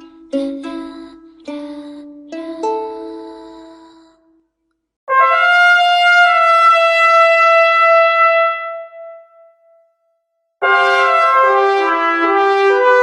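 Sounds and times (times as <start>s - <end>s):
trumpet-like brass note: 5.1s - 9.8s, 10.6s - 13.0s.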